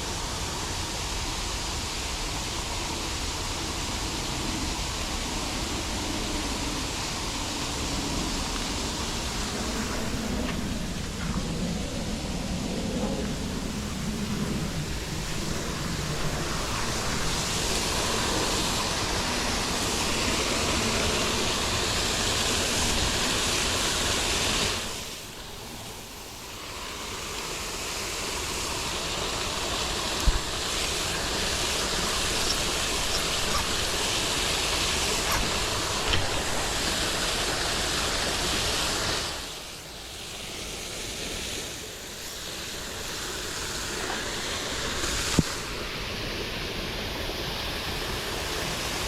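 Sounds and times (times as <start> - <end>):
waterfall rushing: 0.0 - 49.0.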